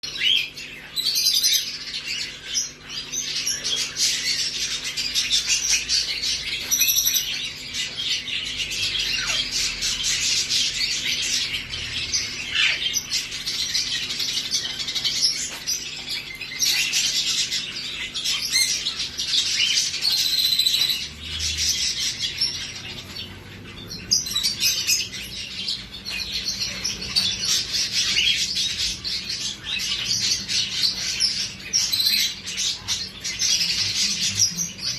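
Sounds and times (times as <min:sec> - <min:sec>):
parrots chirping and squawking: 0:00.0 - 0:34.9.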